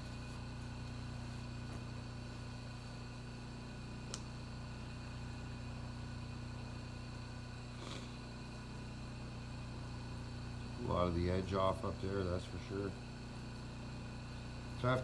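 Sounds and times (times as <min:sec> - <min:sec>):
light click: 0:04.1 - 0:04.3.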